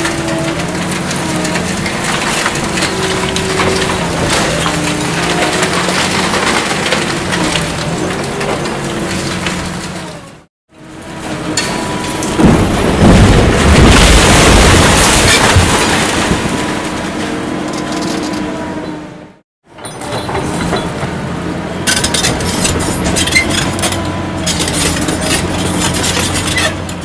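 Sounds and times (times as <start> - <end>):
falling rubble crashing: 0.0 - 10.1, 11.3 - 17.3, 21.9 - 27.0
concrete debris crunching: 0.0 - 10.5, 11.2 - 18.4, 21.8 - 27.0
demolition machine engine running: 0.0 - 27.0.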